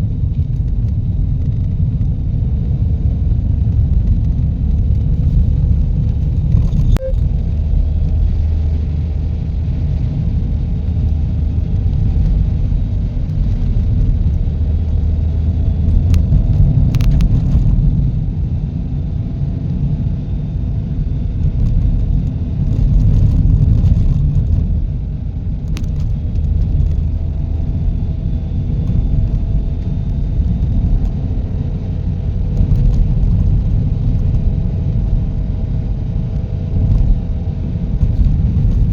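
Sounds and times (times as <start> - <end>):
car engine and road noise: 0.0 - 38.9.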